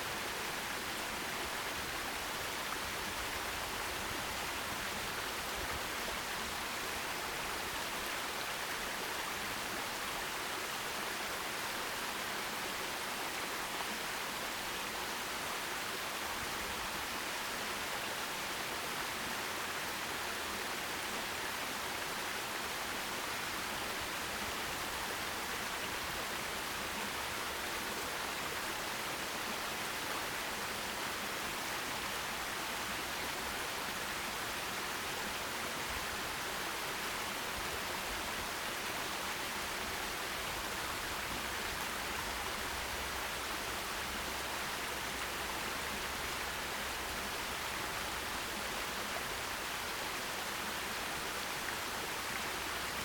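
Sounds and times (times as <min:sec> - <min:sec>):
stream water rushing: 0:00.0 - 0:53.0.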